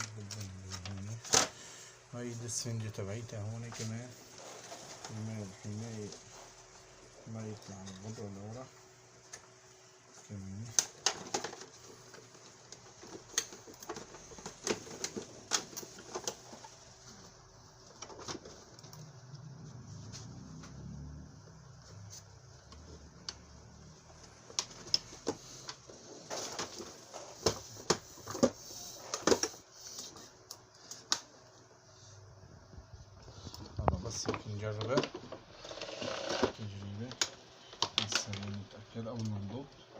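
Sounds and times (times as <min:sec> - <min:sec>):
plastic parts clicking and knocking: 0:10.6 - 0:16.7, 0:33.6 - 0:39.4.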